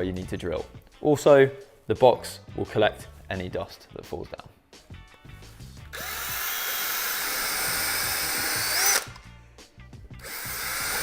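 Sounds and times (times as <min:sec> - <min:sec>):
power drill boring into wood: 0:05.9 - 0:09.2, 0:10.2 - 0:11.0.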